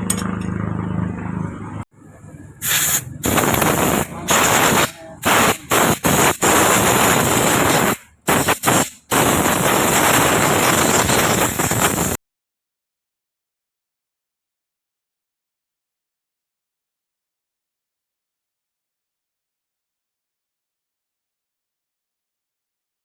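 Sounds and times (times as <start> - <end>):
pneumatic impact wrench hammering: 2.6 - 12.2.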